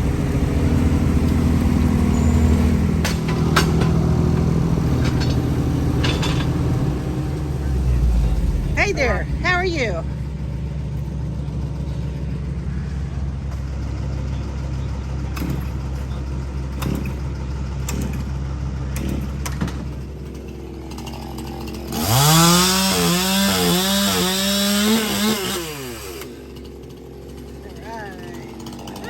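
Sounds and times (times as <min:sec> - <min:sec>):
low engine drone: 0:00.0 - 0:23.2
chainsaw cutting: 0:08.6 - 0:11.2, 0:19.0 - 0:29.0.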